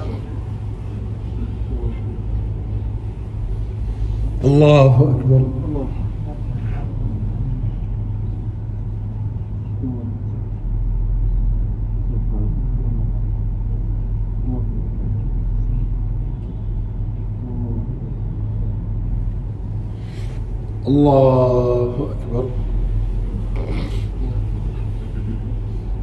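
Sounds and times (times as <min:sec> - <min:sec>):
faint indistinct voices: 0:00.0 - 0:26.0
low hum and rumble: 0:00.0 - 0:26.0.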